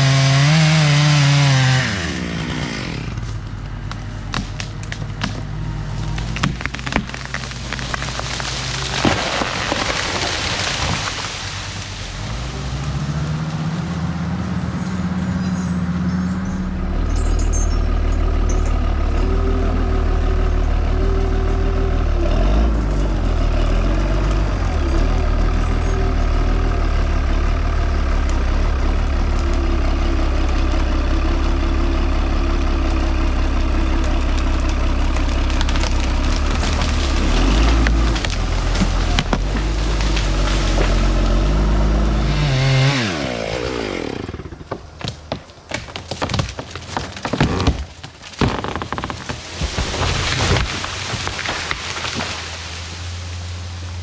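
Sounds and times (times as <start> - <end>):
heavy diesel engine running: 1.2 - 9.0, 11.6 - 45.0.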